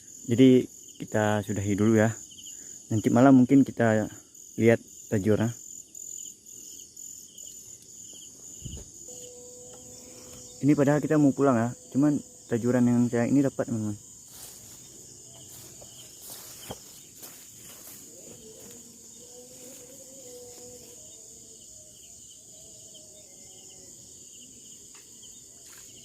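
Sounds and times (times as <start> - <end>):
crickets chirping: 0.0 - 26.0.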